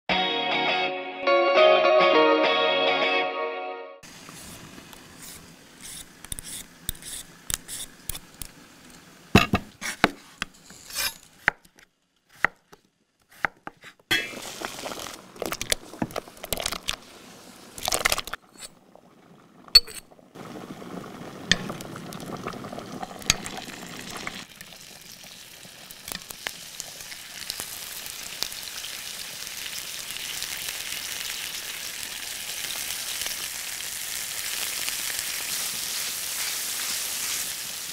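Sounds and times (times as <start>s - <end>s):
food sizzling in a pan: 4.0s - 10.9s, 14.1s - 17.8s, 20.4s - 37.9s.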